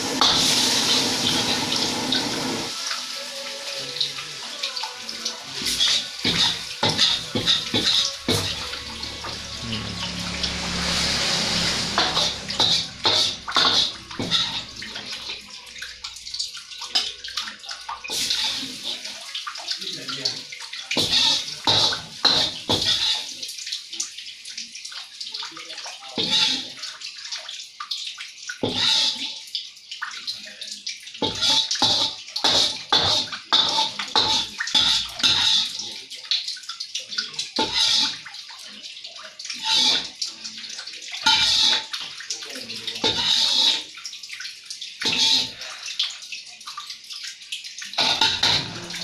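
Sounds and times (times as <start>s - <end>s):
noodles sizzling in a wok: 0.0s - 15.4s, 18.1s - 19.4s, 20.9s - 23.9s, 31.2s - 35.8s, 37.6s - 38.2s, 41.3s - 42.0s, 42.7s - 44.0s, 44.8s - 46.0s
spatula clattering against pan: 12.0s - 14.7s, 21.0s - 23.3s, 31.2s - 35.8s, 41.2s - 42.0s.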